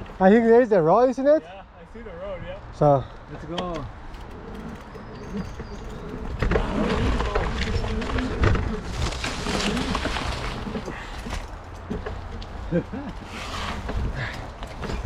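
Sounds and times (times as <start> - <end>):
bike rattling and knocking: 3.4 - 15.0.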